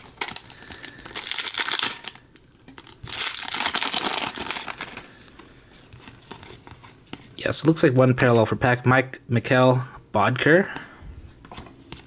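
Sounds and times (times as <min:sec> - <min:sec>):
foil wrapper tearing and crinkling: 0:00.0 - 0:05.1.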